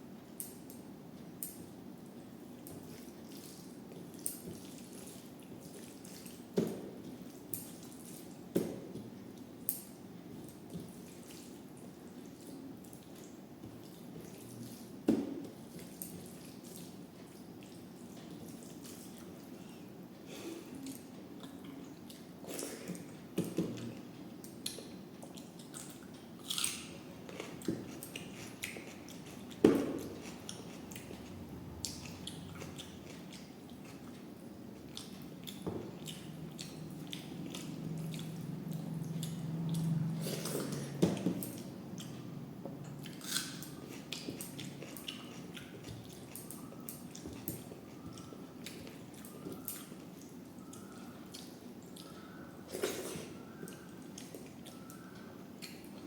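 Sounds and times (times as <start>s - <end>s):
wet chewing and squishing: 24.6s - 56.0s.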